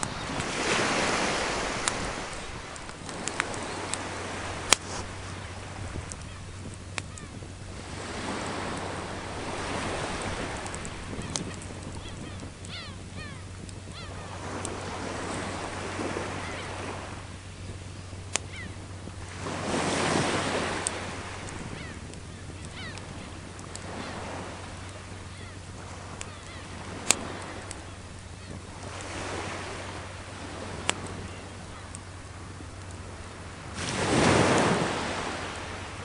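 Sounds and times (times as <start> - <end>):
wood fire crackling and popping: 0.0 - 14.7, 20.6 - 29.2, 30.6 - 31.3
sea waves washing onto shore: 0.0 - 36.0.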